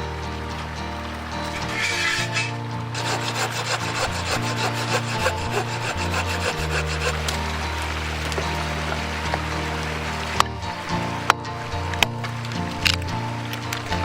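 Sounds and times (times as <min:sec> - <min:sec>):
background music with bass: 0:00.0 - 0:14.0
scraping strokes on wood: 0:01.7 - 0:07.5.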